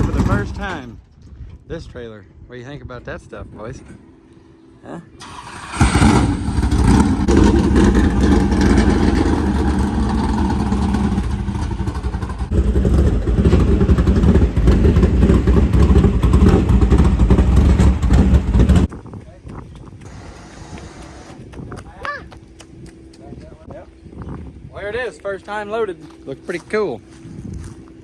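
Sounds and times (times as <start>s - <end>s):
loud engine running hard: 0.0s - 0.9s, 5.2s - 18.9s, 20.0s - 21.6s.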